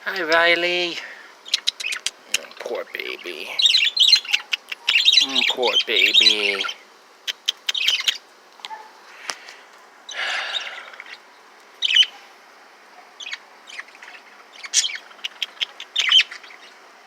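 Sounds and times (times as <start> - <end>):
caged birds chirping: 0.0 - 17.0
bird squawk: 3.6 - 8.9, 10.1 - 12.3, 13.0 - 16.8.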